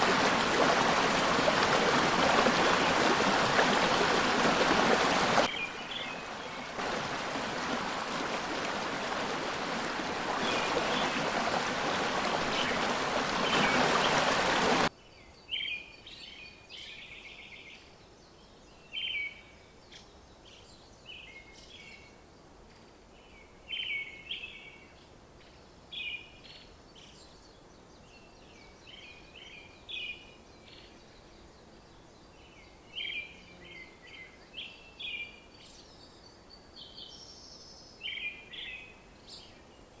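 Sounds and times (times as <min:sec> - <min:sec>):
stream water rushing: 0:00.0 - 0:14.9
songbird chirping: 0:00.0 - 0:40.0.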